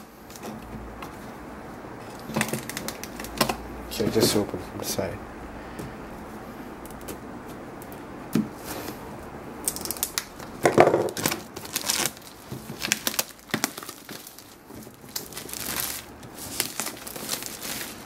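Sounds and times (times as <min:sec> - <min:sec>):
packaging crinkling and tearing: 0:02.1 - 0:03.6, 0:09.6 - 0:18.0.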